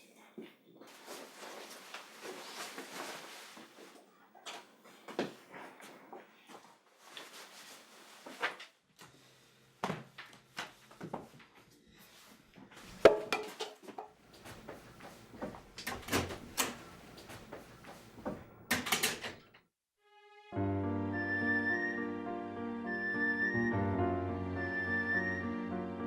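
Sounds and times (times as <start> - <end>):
soft music: 20.0 - 26.0.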